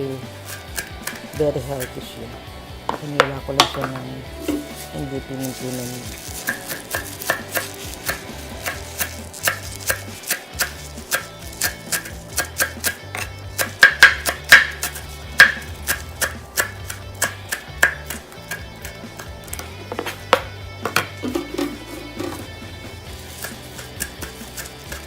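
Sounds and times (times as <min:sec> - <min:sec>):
knife chopping on cutting board: 0:00.5 - 0:02.0, 0:02.9 - 0:04.8, 0:06.4 - 0:18.6, 0:19.2 - 0:22.4.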